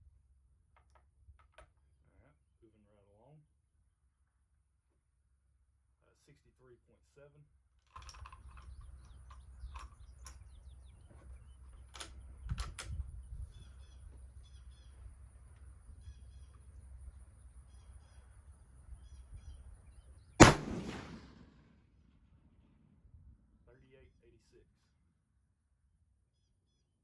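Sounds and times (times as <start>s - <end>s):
rifle handling clicks and knocks: 0.8s - 1.8s, 7.9s - 13.2s
steady low rumble: 18.9s - 21.6s
rifle shot with echo: 20.4s - 21.7s.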